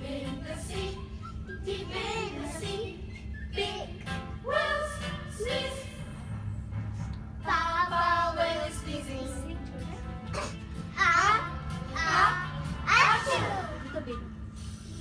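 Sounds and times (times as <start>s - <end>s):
steady low hum: 0.0s - 15.0s
children singing: 1.7s - 2.9s, 11.0s - 13.7s.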